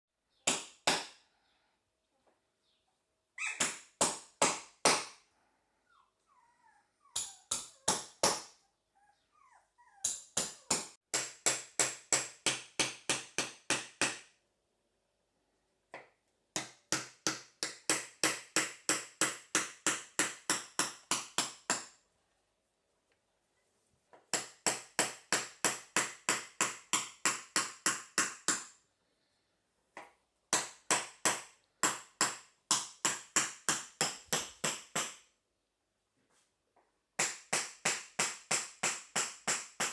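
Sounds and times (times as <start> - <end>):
puppy whimpers: 3.4 - 3.7, 5.8 - 7.9, 8.6 - 10.3.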